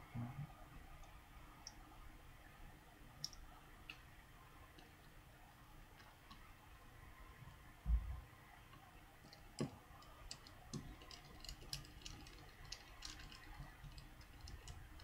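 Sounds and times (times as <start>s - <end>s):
small parts and tools clicking: 9.2s - 15.0s.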